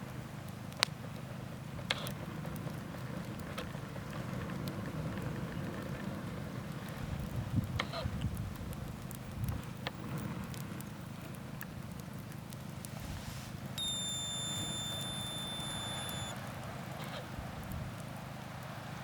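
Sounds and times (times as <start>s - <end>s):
campfire crackling: 0.0s - 19.0s
high-pitched whistle tone: 13.8s - 16.4s.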